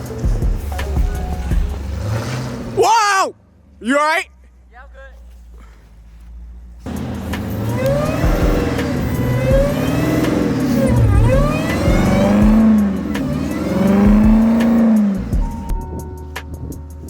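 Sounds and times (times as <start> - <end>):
car engine revving hard: 1.4 - 2.8, 6.9 - 15.7.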